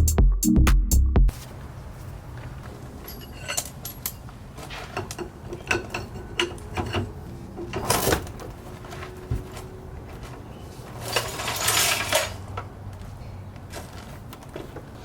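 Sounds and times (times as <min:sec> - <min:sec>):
light metallic clicks and clinks: 0:03.0 - 0:04.3.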